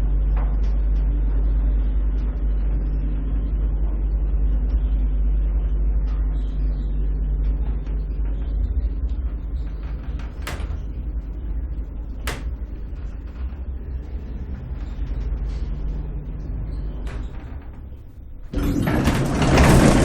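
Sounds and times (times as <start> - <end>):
elevator hum and rumble: 0.0 - 20.0.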